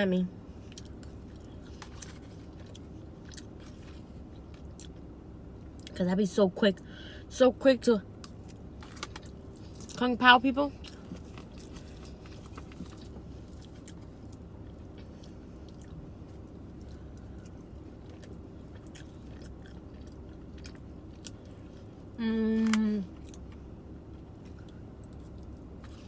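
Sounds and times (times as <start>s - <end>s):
chewing food: 0.6s - 5.1s, 10.8s - 22.0s, 22.6s - 26.0s.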